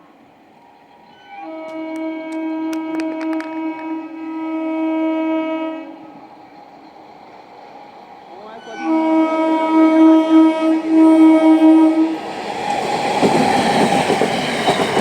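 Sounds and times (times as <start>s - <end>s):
train horn blasts: 1.1s - 6.3s, 8.5s - 12.2s.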